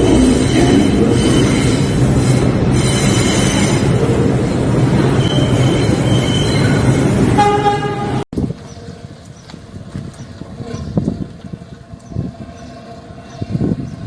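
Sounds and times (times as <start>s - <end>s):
subway train running loud: 0.0s - 14.0s
train horn toot: 7.3s - 8.2s.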